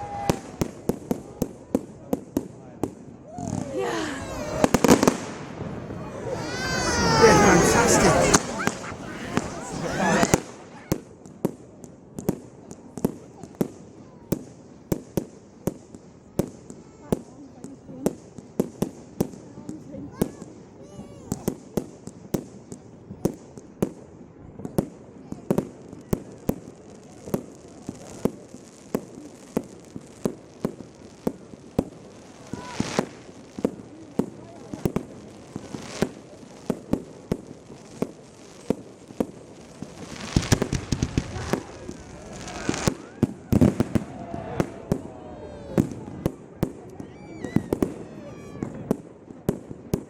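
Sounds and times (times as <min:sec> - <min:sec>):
fireworks exploding: 0:02.9 - 0:11.2, 0:26.5 - 0:50.0.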